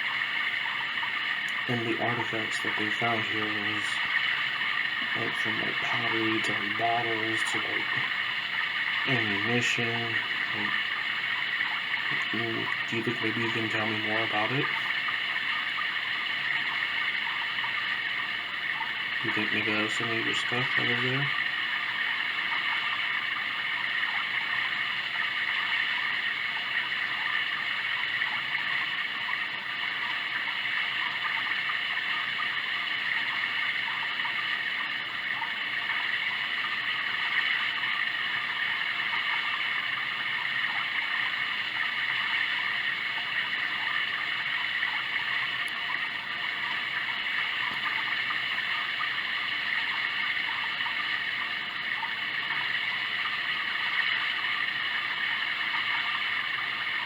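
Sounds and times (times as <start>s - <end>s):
running water hiss: 0.0s - 57.0s.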